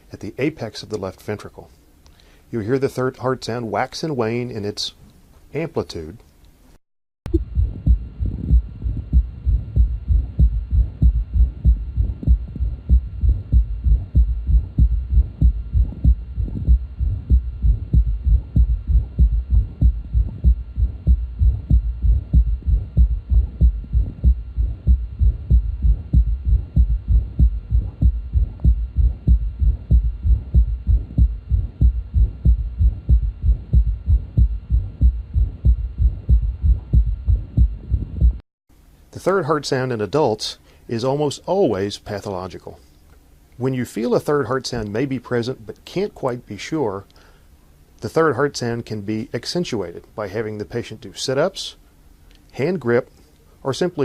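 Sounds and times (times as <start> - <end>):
heartbeat through stethoscope: 7.3 - 38.4.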